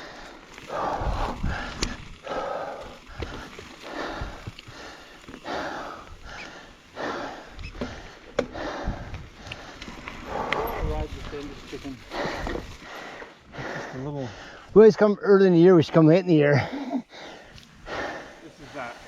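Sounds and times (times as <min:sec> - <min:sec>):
person breathing heavily: 0:00.0 - 0:11.0, 0:12.0 - 0:14.8, 0:16.5 - 0:19.0
sharp clicks from bike: 0:00.2 - 0:02.2.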